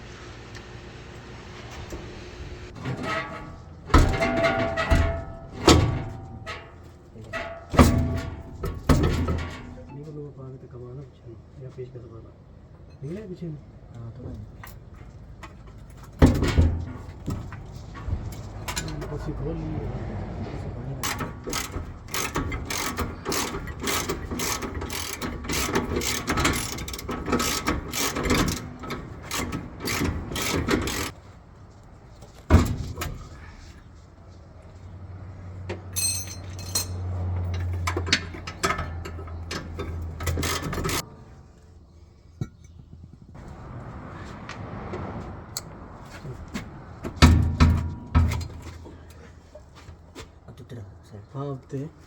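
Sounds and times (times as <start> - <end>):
ratchet wrench clicking: 21.0 - 28.6.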